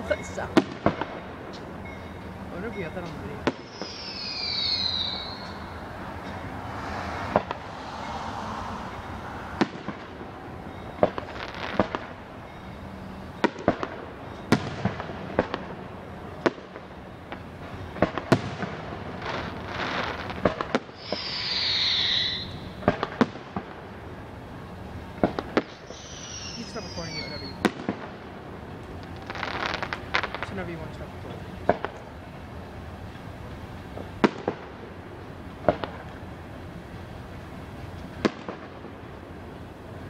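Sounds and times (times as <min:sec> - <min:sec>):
fireworks bangs: 0:00.0 - 0:01.8, 0:02.6 - 0:12.5, 0:13.4 - 0:36.2, 0:37.8 - 0:40.0
fireworks crackling: 0:00.0 - 0:40.0
descending firework whistle: 0:03.5 - 0:13.6, 0:20.8 - 0:23.0, 0:25.6 - 0:27.9.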